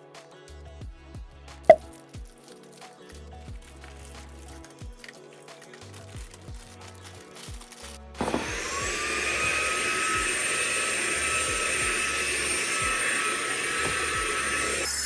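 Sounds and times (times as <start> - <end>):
vacuum cleaner motor whine: 8.2 - 15.0.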